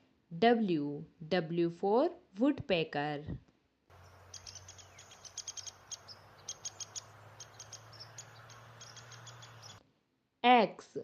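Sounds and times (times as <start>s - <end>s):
woodpecker ticks and chirps: 3.9s - 9.8s.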